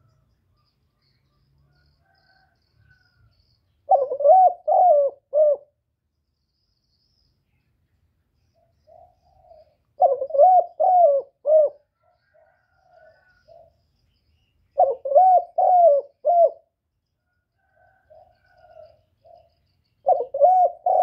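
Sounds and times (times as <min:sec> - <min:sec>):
dove cooing: 0:03.9 - 0:05.8, 0:08.9 - 0:13.7, 0:14.8 - 0:16.7, 0:17.9 - 0:21.0.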